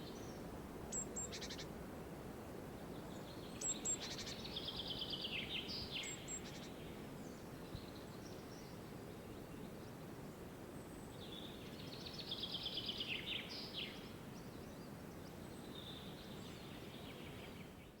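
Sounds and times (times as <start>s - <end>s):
faint bird calls: 0.0s - 1.7s, 3.1s - 7.4s
songbird trilling: 0.9s - 1.7s.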